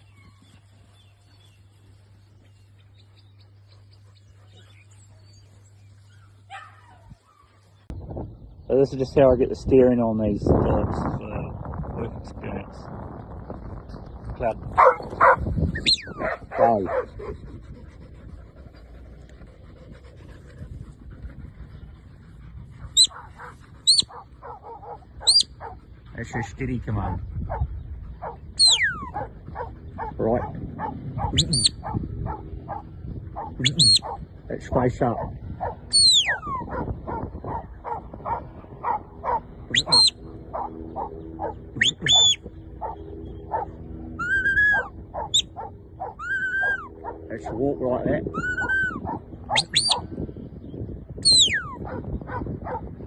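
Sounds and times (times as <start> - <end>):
low outdoor rumbling: 0.0 - 53.0
dog barking: 6.5 - 7.0, 14.8 - 15.4, 16.2 - 17.4, 23.0 - 25.8, 35.2 - 43.7, 44.6 - 47.6, 48.6 - 50.0, 51.8 - 52.8.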